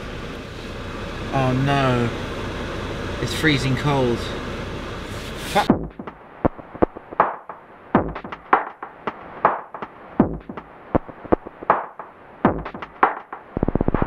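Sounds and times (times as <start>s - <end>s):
electronic music with percussive hits: 5.7s - 14.0s.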